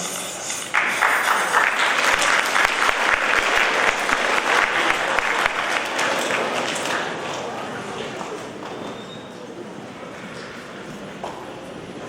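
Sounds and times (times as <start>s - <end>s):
audience applauding: 0.7s - 8.5s.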